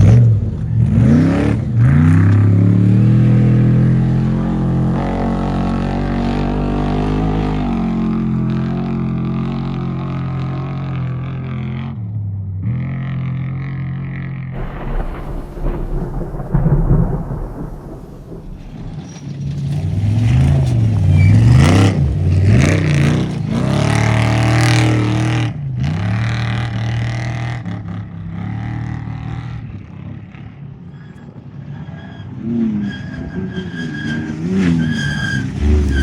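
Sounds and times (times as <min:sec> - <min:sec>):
truck engine revving: 0:14.6 - 0:27.1, 0:32.8 - 0:36.0.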